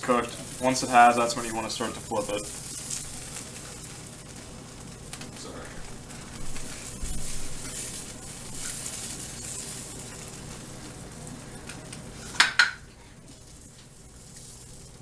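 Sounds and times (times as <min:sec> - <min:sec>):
egg sizzling in frying pan: 0:00.0 - 0:15.0
utensil knocking against pan: 0:12.4 - 0:12.8.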